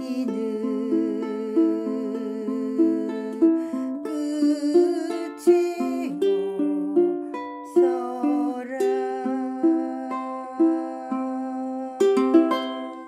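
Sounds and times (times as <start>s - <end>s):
ukulele fingerstyle arpeggio: 0.0s - 13.0s.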